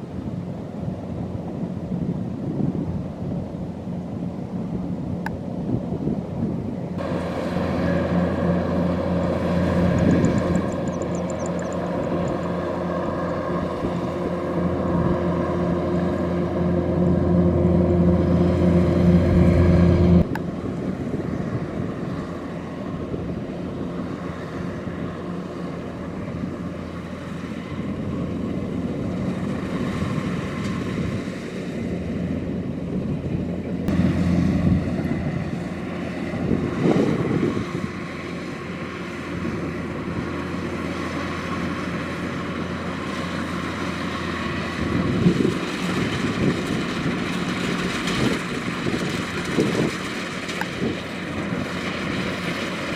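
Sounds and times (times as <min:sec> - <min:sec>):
combine harvester engine running: 0:06.4 - 0:52.9.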